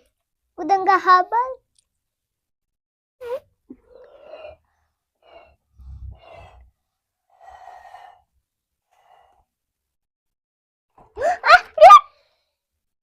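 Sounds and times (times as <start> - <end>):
breathy blowing into slime: 5.2 - 6.7.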